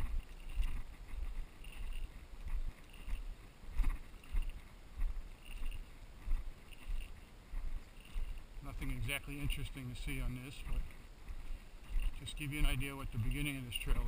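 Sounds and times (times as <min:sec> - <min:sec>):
footsteps on dirt road: 0:00.0 - 0:14.0.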